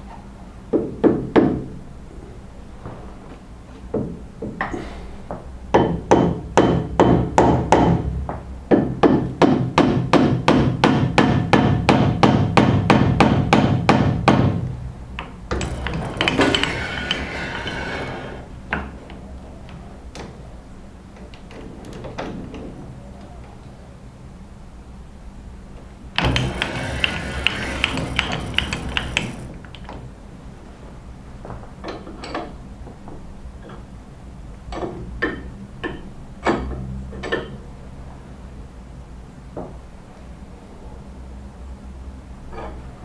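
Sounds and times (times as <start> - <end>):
rasping scraping: 15.6 - 18.6, 26.2 - 29.6
rapid hammer blows: 26.2 - 29.7.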